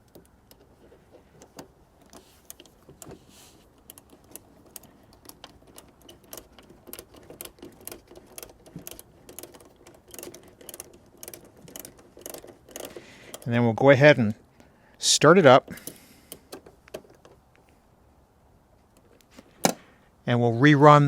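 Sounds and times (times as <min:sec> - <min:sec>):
hand tool clicking: 0:00.0 - 0:13.5, 0:15.7 - 0:17.4.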